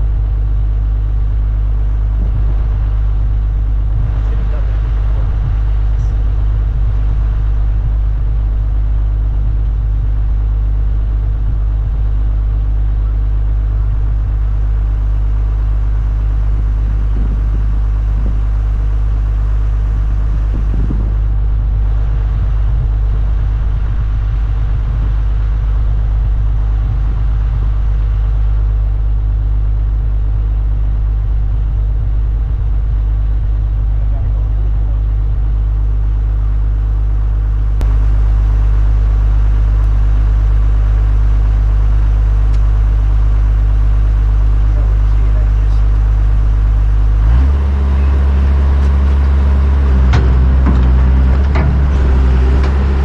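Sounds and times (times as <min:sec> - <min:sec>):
engine running: 0:00.0 - 0:53.0
faint knocks: 0:48.8 - 0:53.0.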